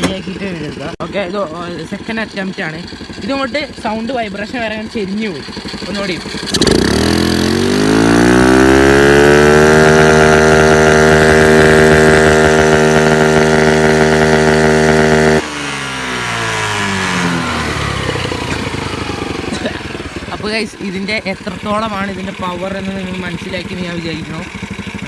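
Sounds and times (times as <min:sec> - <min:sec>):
scooter engine revving: 0:00.0 - 0:25.0.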